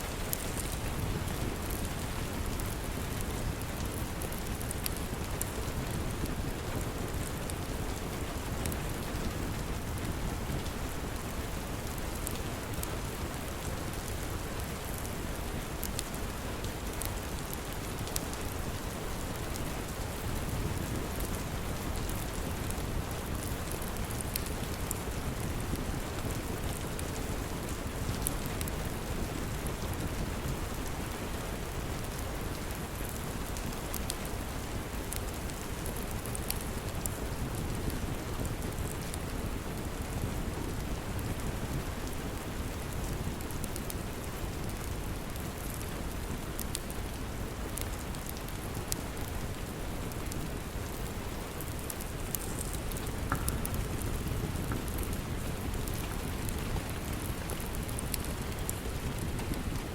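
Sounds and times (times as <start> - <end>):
steady rain: 0.0 - 59.9
wood fire crackling: 0.0 - 59.9.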